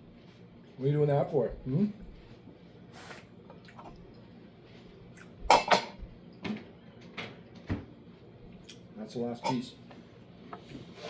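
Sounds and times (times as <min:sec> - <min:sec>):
dishware clinking: 0:05.5 - 0:06.0.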